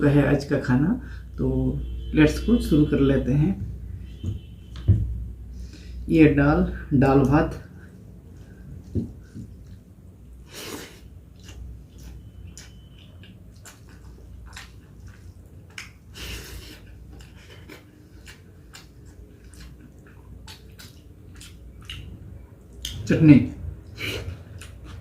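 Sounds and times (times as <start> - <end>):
wet chewing sounds: 8.3 - 10.1, 10.7 - 23.1, 23.8 - 25.0.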